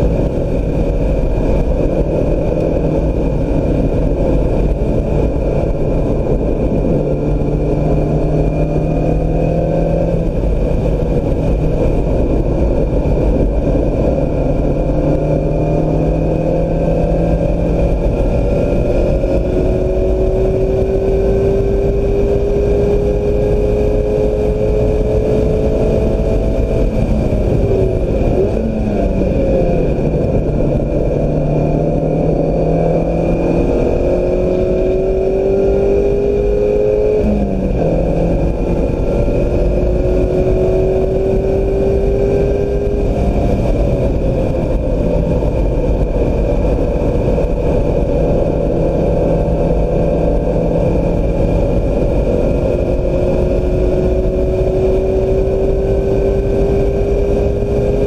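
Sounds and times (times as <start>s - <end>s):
car engine pulling hard: 0.0s - 58.0s
road and wind noise: 0.0s - 58.0s.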